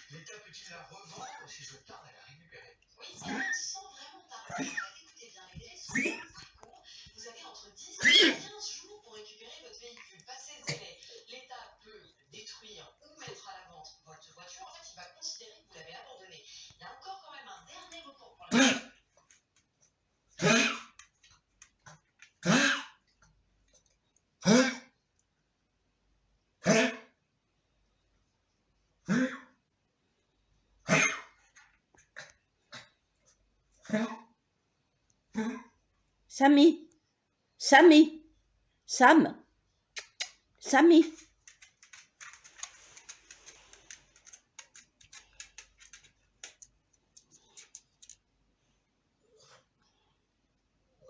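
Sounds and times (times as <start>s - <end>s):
dog hacking coughs: 4.5s - 5.0s, 8.0s - 8.5s, 18.5s - 19.0s, 20.4s - 21.0s, 22.4s - 23.0s, 24.4s - 24.9s, 26.6s - 27.1s, 30.8s - 31.5s
faint small clicks and ticks: 41.1s - 48.4s.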